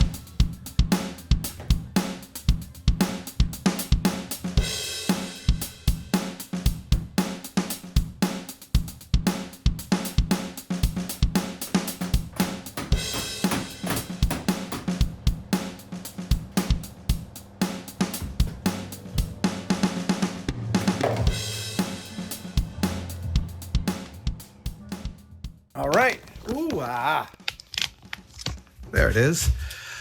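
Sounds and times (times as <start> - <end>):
upbeat drum-kit music with bass: 0.0 - 27.4
cymbal swell: 14.5 - 25.4.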